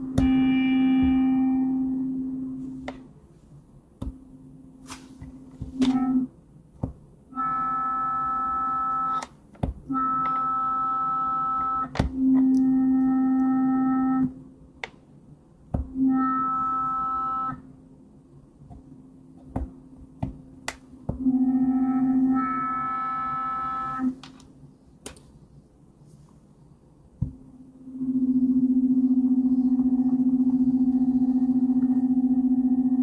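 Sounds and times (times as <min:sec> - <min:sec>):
synthesized electronic tone: 0:00.0 - 0:02.8, 0:05.7 - 0:06.3, 0:15.9 - 0:17.7, 0:21.2 - 0:24.2, 0:27.6 - 0:33.0.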